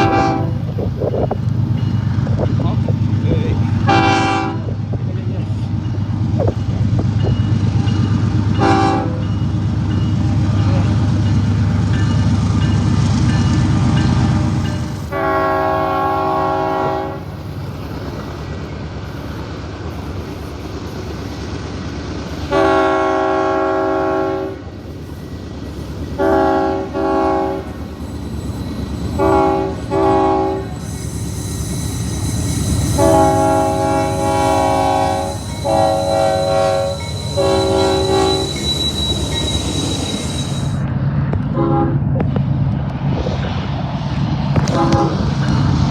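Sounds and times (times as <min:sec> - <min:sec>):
locomotive air horn blasts: 0:00.0 - 0:00.7, 0:03.9 - 0:04.7, 0:08.6 - 0:09.2, 0:15.1 - 0:17.3, 0:22.5 - 0:24.6, 0:26.2 - 0:27.7, 0:29.1 - 0:30.9, 0:32.1 - 0:39.2, 0:41.6 - 0:42.0, 0:44.6 - 0:45.2
train rumbling on rails: 0:00.0 - 0:45.9.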